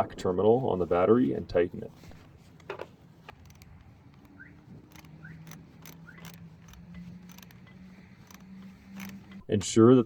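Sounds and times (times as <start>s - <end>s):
wrench clicking and scraping: 2.1s - 9.5s.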